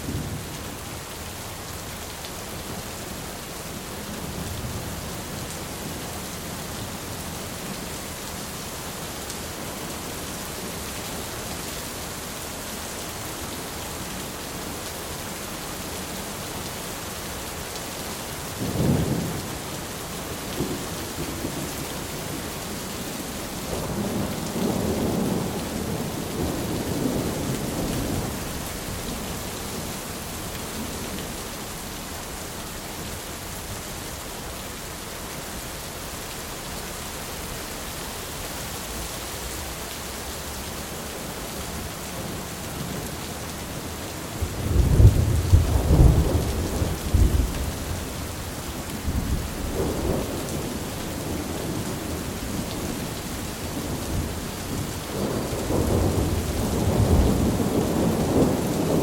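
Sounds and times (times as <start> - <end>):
steady rain: 0.0 - 59.0
thunder rumbling: 44.4 - 53.0, 53.8 - 59.0.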